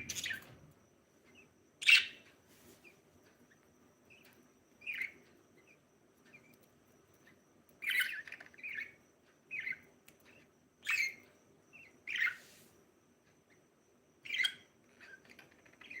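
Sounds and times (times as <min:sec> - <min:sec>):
budgerigar chirping: 0:00.0 - 0:00.5, 0:01.8 - 0:02.2, 0:04.8 - 0:05.2, 0:07.8 - 0:09.8, 0:10.8 - 0:11.2, 0:11.8 - 0:12.4, 0:14.2 - 0:16.0.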